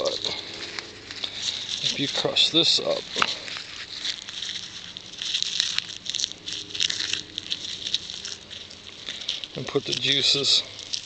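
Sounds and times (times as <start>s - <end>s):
plant stems crushed and rubbed: 0.0s - 11.0s.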